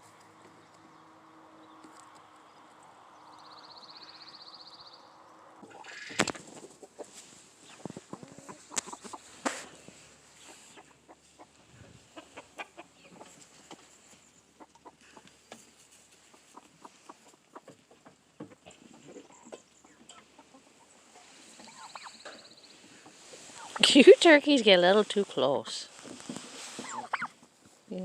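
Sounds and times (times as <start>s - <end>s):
poultry clucking: 5.6s - 25.8s, 26.4s - 27.8s.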